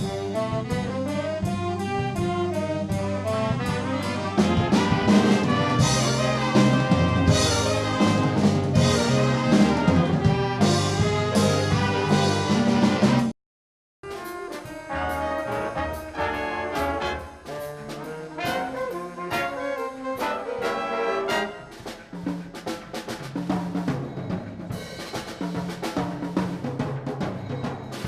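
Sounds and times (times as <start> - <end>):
brass melody notes: 0.0 - 13.3, 14.0 - 22.0.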